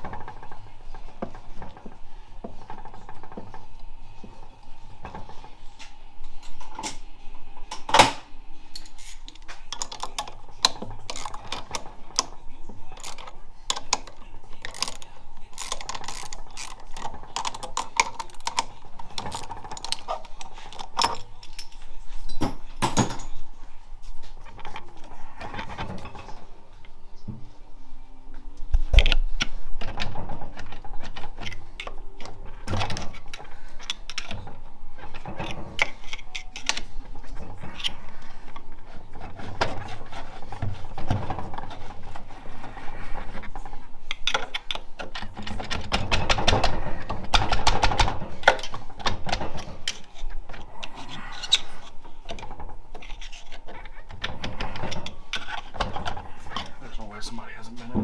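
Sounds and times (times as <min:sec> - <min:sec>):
metal parts and tools clinking: 0:08.7 - 0:23.4.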